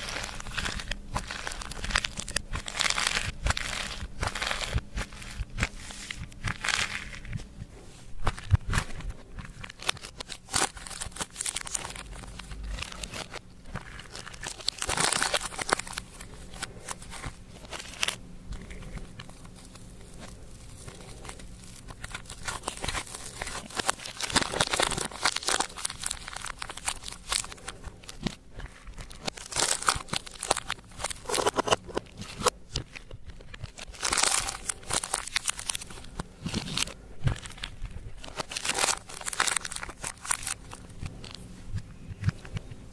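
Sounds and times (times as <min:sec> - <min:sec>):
slime crackling and popping: 0:00.0 - 0:42.9.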